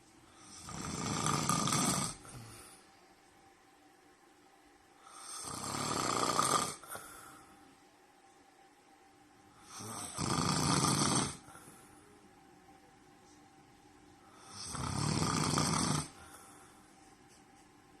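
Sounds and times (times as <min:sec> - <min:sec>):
man snoring: 0:00.3 - 0:02.7, 0:05.0 - 0:07.3, 0:09.6 - 0:11.7, 0:14.3 - 0:16.4.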